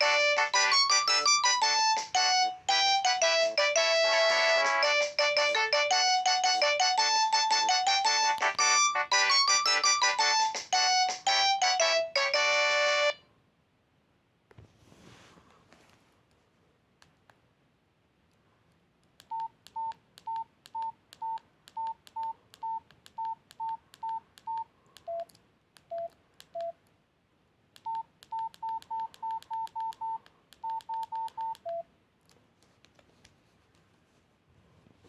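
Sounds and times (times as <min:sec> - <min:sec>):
phone keypad beeps: 0:19.3 - 0:25.3, 0:25.9 - 0:26.8, 0:27.8 - 0:31.9.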